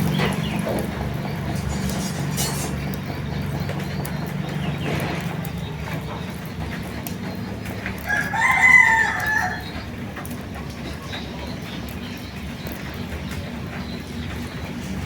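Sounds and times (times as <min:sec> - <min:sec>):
low city hum: 0:00.0 - 0:15.0
rooster crowing: 0:08.0 - 0:09.8.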